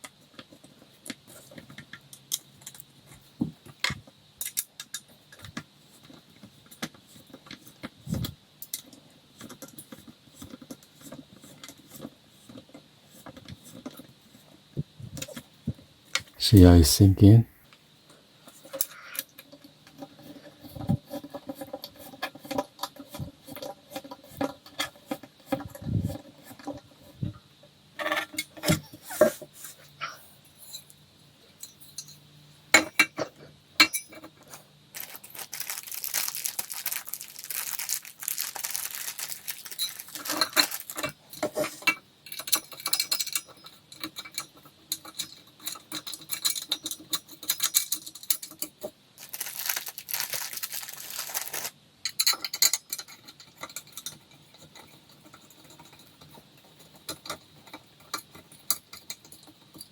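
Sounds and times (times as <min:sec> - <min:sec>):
scraping or rustling: 0:34.4 - 0:41.8, 0:49.2 - 0:51.7.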